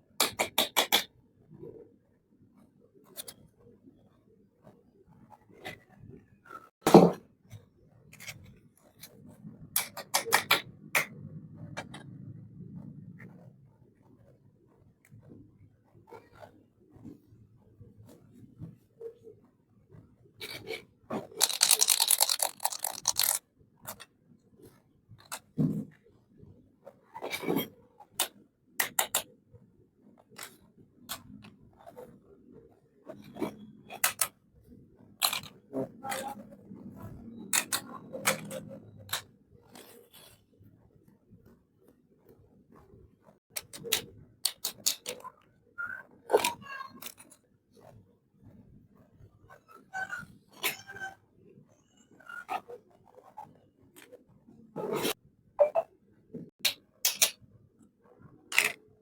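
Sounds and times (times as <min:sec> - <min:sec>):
plastic toy piece knock: 0:00.2 - 0:01.1, 0:21.4 - 0:23.4, 0:56.6 - 0:57.4
plastic pieces clicking: 0:20.4 - 0:24.0, 0:35.2 - 0:36.4, 0:43.6 - 0:45.2, 0:56.6 - 0:57.4, 0:58.5 - 0:58.8
light clicks of toy parts: 0:20.4 - 0:24.1, 0:27.2 - 0:29.3, 0:33.2 - 0:34.4, 0:35.2 - 0:36.5, 0:37.5 - 0:40.4, 0:43.5 - 0:45.4, 0:46.3 - 0:47.4, 0:56.6 - 0:57.4, 0:58.5 - 0:58.8.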